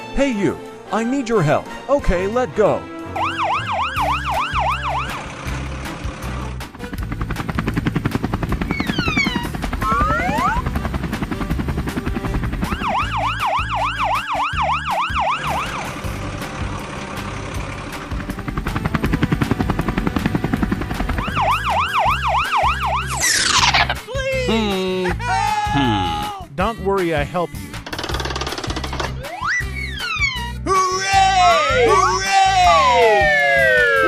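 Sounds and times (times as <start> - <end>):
siren wail: 3.1 - 5.4, 8.7 - 10.7, 12.6 - 15.9, 21.1 - 23.9, 29.2 - 34.0
cartoon engine throbbing: 3.2 - 24.0, 27.8 - 34.0.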